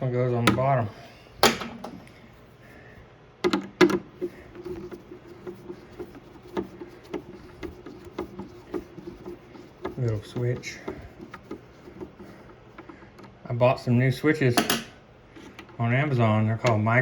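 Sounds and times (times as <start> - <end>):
low steady hum: 0.0 - 17.0
clicks and knocks on plastic: 3.4 - 13.4.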